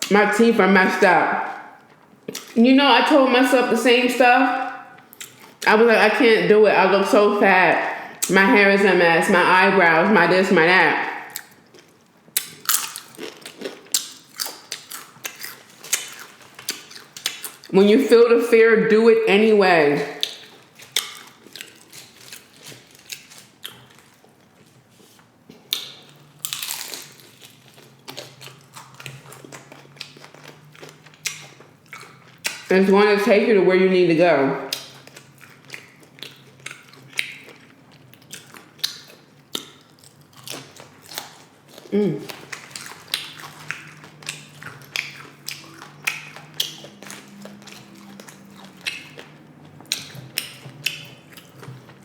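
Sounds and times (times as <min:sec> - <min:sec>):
faint low hum: 0:00.0 - 0:52.0
crunchy chips being chewed: 0:04.7 - 0:05.7, 0:11.2 - 0:17.7, 0:20.2 - 0:32.7, 0:34.7 - 0:52.0.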